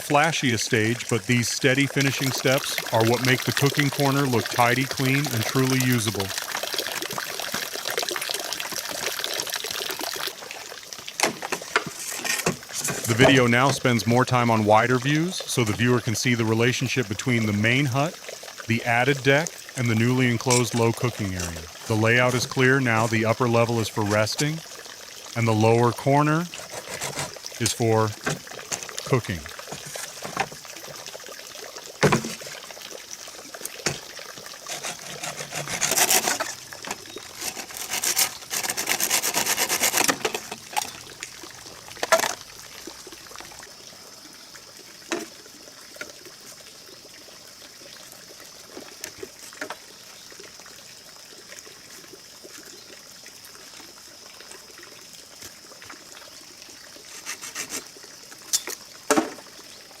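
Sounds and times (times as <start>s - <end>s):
rasping rubbing strokes: 26.6s - 27.4s, 34.7s - 36.6s, 37.4s - 40.2s.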